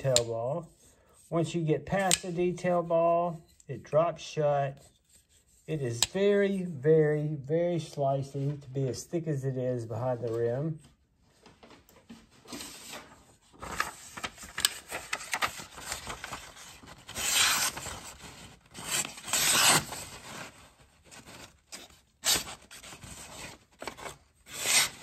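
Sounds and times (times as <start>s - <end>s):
paper rustling and rasping: 12.4s - 25.0s
knife slicing paper: 13.6s - 25.0s.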